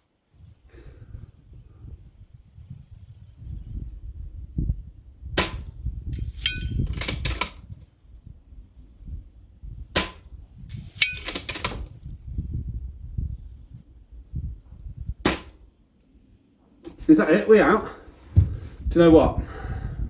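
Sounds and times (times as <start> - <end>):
wind rumble on microphone: 0.3 - 20.0
air rifle shot crack: 5.4 - 5.7, 10.0 - 11.8, 15.2 - 15.6
metallic clicks of rifle action: 6.2 - 7.9, 10.0 - 12.2, 15.3 - 16.2.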